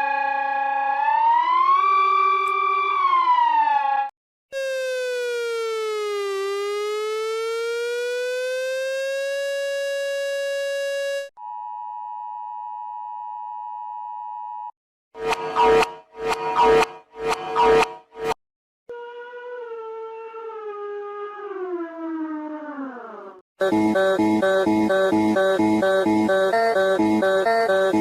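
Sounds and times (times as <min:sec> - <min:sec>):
reversed electronic siren tone: 0:00.0 - 0:11.3, 0:15.2 - 0:18.4
steady high alert tone: 0:15.2 - 0:18.4, 0:23.6 - 0:28.0.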